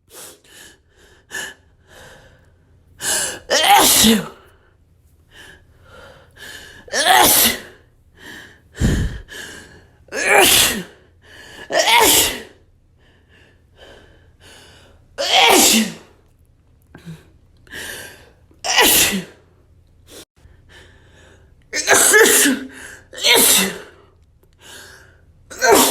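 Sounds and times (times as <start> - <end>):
person sneezing: 3.2 - 4.4, 6.9 - 7.8, 8.8 - 9.3, 10.1 - 11.0, 11.7 - 12.6, 15.2 - 16.2, 18.6 - 19.4, 21.8 - 24.0, 25.5 - 25.9
quick inhales: 8.4 - 9.8.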